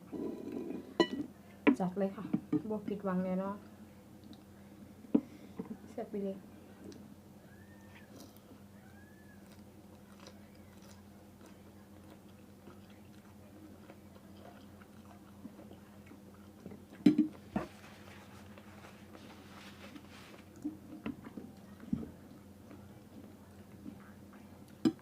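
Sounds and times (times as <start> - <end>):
faint steady hum: 0.0 - 25.0
chewing noodles: 6.8 - 24.8.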